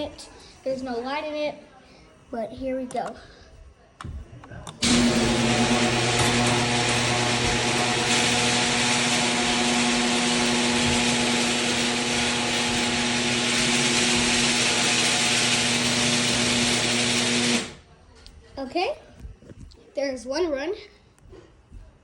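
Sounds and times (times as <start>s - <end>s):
drive whirring: 4.0s - 17.8s
garage door opener motor hum: 4.8s - 17.8s.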